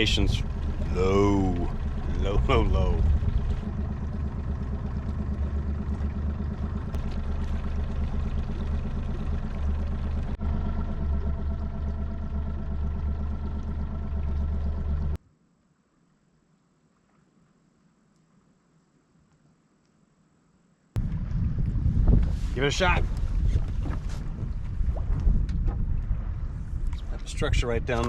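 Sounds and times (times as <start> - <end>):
boat motor droning: 0.0 - 15.2.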